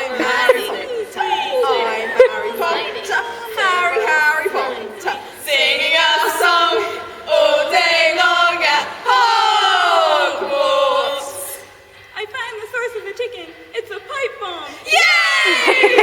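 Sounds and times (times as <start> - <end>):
group of voices chanting and singing: 0.0 - 12.1.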